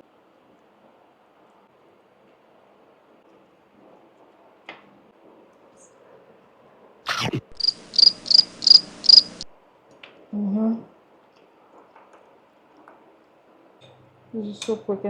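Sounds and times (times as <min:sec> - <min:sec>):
high cricket chirps: 0:07.4 - 0:09.5.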